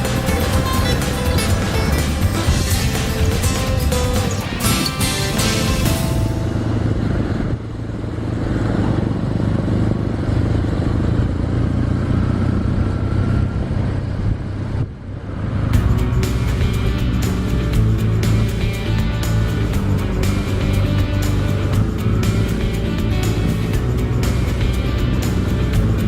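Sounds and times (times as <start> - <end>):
background music: 0.0 - 7.8, 15.8 - 26.0
motorcycle engine running: 0.0 - 26.0.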